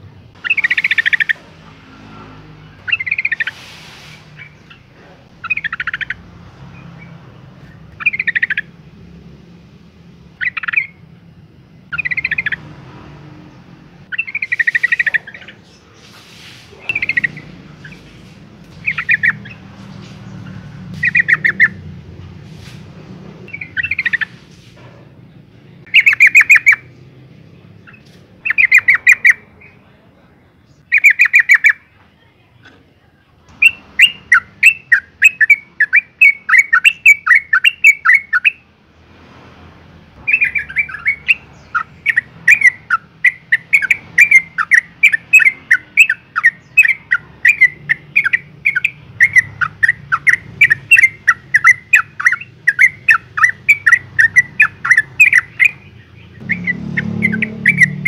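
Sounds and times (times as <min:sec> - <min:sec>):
bird rapid chattering calls: 0:00.4 - 0:09.2, 0:10.2 - 0:11.1, 0:11.8 - 0:24.7, 0:25.8 - 0:29.9, 0:30.8 - 0:31.9, 0:33.5 - 0:38.6, 0:40.2 - 0:58.0.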